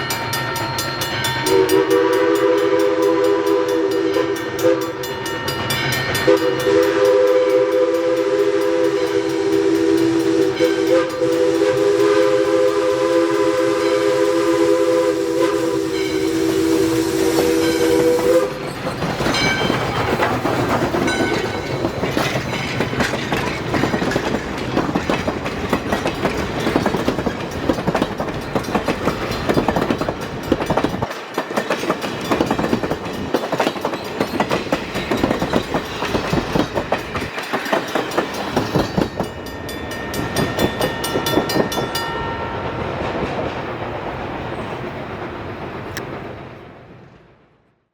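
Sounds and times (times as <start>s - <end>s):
train rumble and wheel clatter: 0.0s - 47.8s
steam whistle chord: 1.4s - 5.3s, 6.2s - 18.6s.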